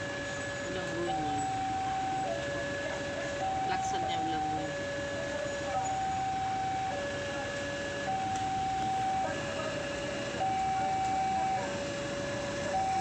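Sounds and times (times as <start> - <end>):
two-tone level crossing alarm: 0.0 - 13.0.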